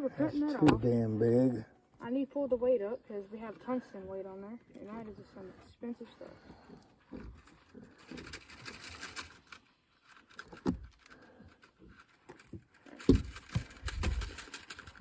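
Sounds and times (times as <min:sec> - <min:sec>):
fishing gear rustling and clicking: 0:03.0 - 0:15.0.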